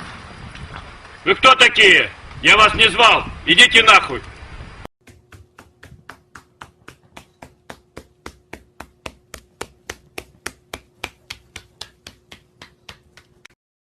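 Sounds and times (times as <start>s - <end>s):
rapid even knocking: 5.0s - 13.5s.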